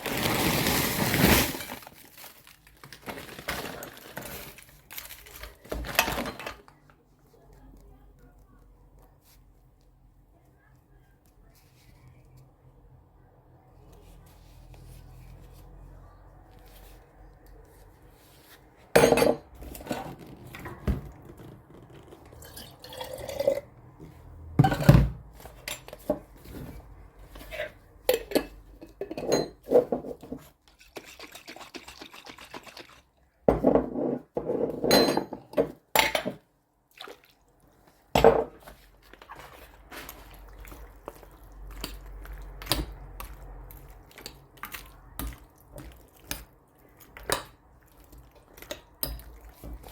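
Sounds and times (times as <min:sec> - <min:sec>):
utensils clattering against pots: 0:27.4 - 0:32.7
liquid being handled: 0:36.9 - 0:49.9.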